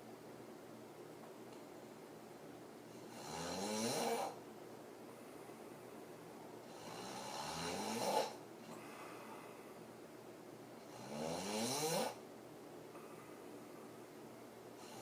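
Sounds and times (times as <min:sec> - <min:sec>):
woman snoring hard: 0:03.1 - 0:04.4, 0:06.7 - 0:08.4, 0:10.8 - 0:12.2.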